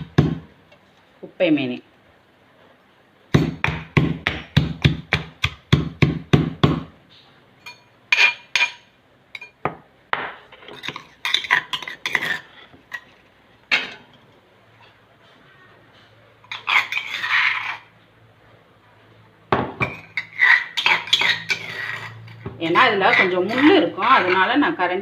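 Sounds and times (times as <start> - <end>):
pestle pounding in mortar: 0.0 - 0.5, 3.4 - 6.9.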